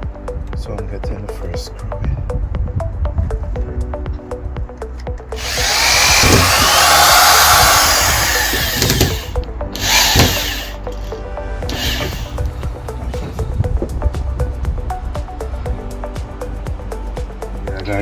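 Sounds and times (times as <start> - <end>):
background music: 0.0 - 18.0
power drill driving a screw: 5.4 - 11.1, 11.7 - 12.5.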